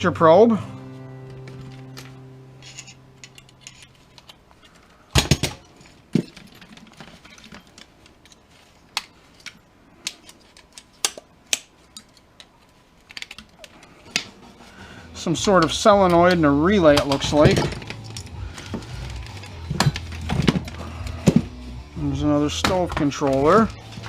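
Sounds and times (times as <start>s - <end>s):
metal clattering on metal: 2.6s - 8.4s, 15.4s - 21.4s.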